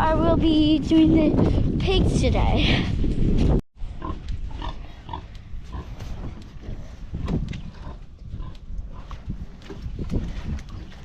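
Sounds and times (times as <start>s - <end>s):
pigs grunting: 3.9s - 9.3s.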